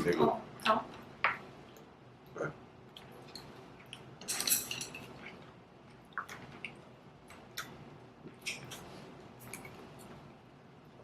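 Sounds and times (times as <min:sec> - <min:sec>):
utensils clinking on containers: 0:04.2 - 0:05.1.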